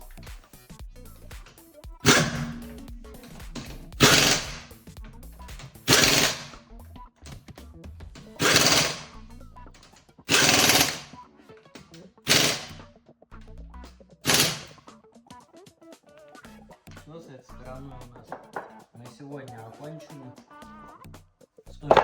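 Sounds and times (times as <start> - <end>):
impact wrench rattling bursts: 1.4 - 6.6, 8.2 - 9.2, 9.8 - 11.2, 12.3 - 12.8, 14.2 - 14.8.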